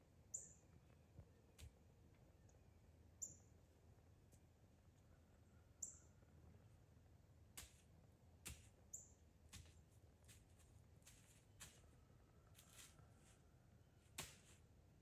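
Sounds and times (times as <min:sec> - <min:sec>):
small bird chirps: 0:00.3 - 0:00.8, 0:03.2 - 0:03.5, 0:05.8 - 0:06.2, 0:08.9 - 0:09.2.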